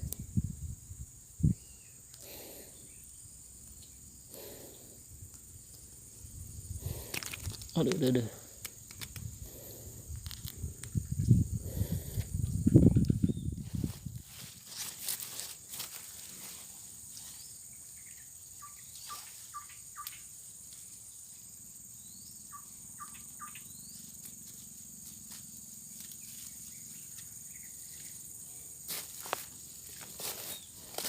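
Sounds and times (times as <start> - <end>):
high-pitched insect drone: 0.0 - 31.0
bird chirping: 1.4 - 4.1, 17.3 - 20.3, 22.0 - 24.2.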